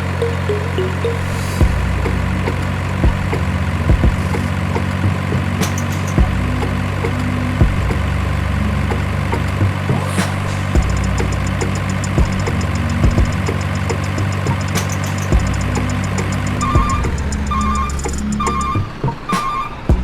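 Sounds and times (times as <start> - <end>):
engine idling: 0.0 - 20.0.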